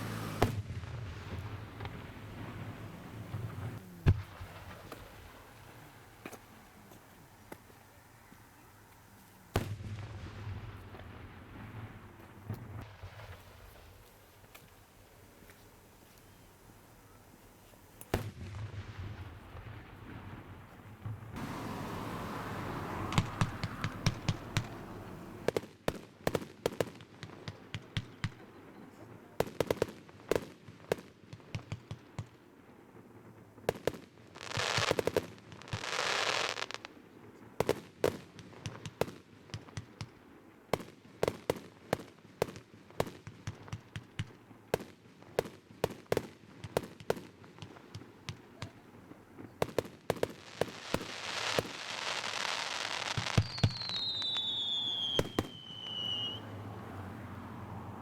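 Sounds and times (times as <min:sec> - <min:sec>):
fireworks popping and cracking: 0:00.1 - 0:07.8, 0:18.0 - 0:28.4, 0:29.3 - 0:32.4, 0:33.4 - 0:36.9, 0:37.6 - 0:56.4
long hisses: 0:21.4 - 0:23.0.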